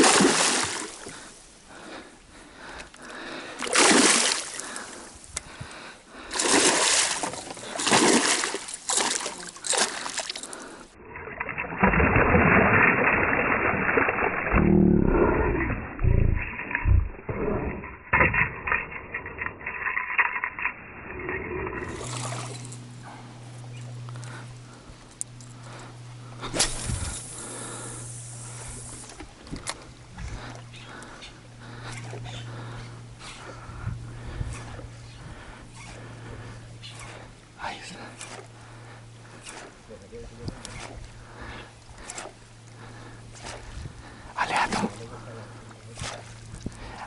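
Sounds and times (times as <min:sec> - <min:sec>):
water splashing: 0:00.0 - 0:01.9, 0:03.1 - 0:05.2, 0:06.1 - 0:15.9, 0:21.8 - 0:22.9, 0:35.8 - 0:47.0
steady low hum: 0:00.0 - 0:47.0.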